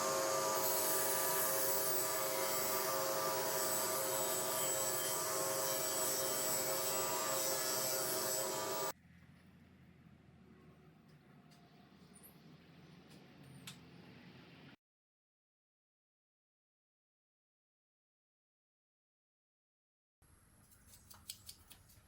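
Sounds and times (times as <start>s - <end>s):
power tool motor whining: 0.0s - 8.9s.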